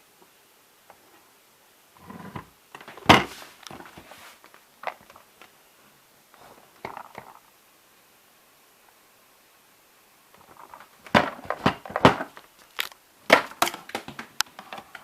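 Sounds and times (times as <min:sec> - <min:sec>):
handling knocks and rattles: 0:10.4 - 0:15.0.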